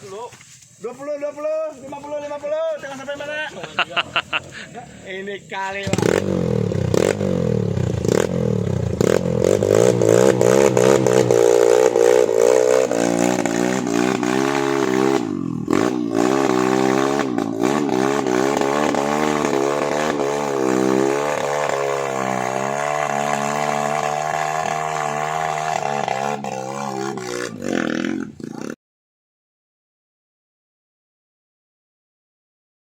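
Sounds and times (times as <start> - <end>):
vehicle engine revving hard: 5.8 - 28.4.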